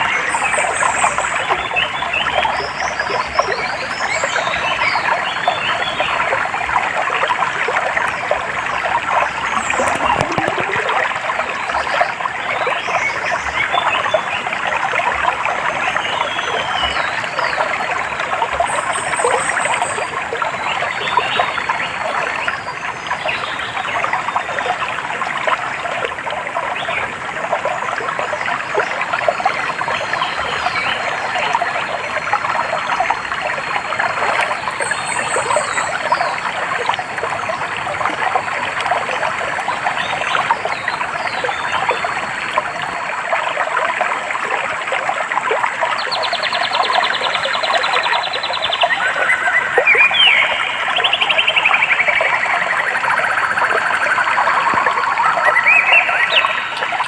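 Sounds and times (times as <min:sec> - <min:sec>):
stream trickling over stones: 0:00.0 - 0:57.0
birds chirping: 0:09.2 - 0:11.0.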